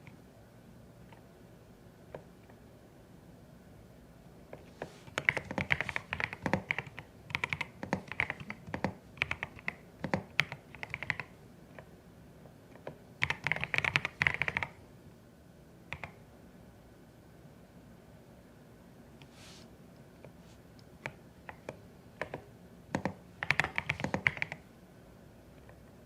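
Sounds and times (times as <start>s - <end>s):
mechanical keyboard typing: 5.1s - 11.4s, 12.8s - 14.8s, 21.5s - 24.6s.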